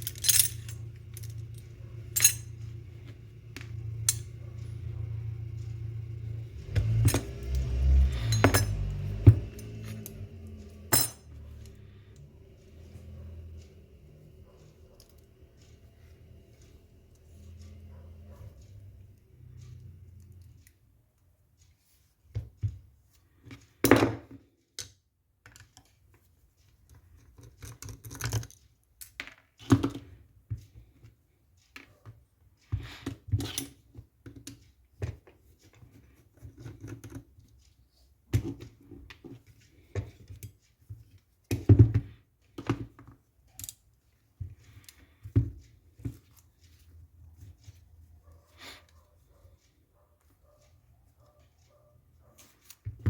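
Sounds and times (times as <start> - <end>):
rifle parts clicking and knocking: 0.0 - 1.6, 2.2 - 2.5.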